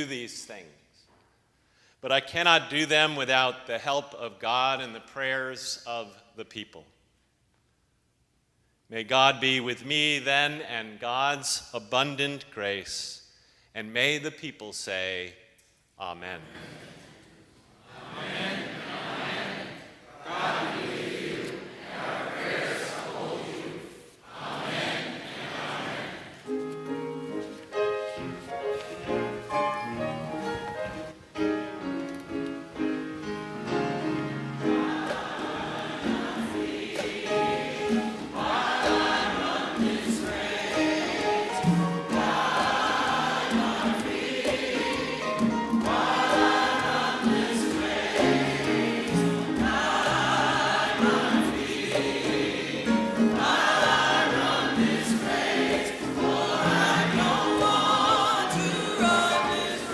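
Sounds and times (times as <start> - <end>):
choir singing: 17.8 - 27.4, 33.6 - 59.9
instrumental accompaniment: 24.5 - 59.9.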